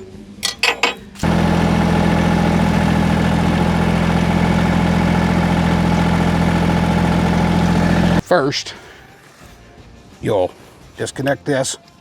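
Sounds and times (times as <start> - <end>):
tractor diesel engine idling: 1.2 - 8.2.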